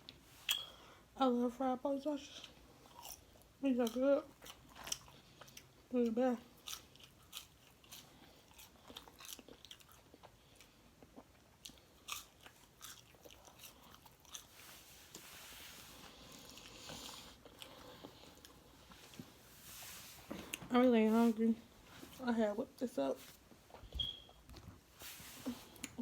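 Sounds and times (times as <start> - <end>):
chewing crunchy food: 2.3 - 19.4
soft hiss: 14.4 - 17.4, 24.9 - 26.0.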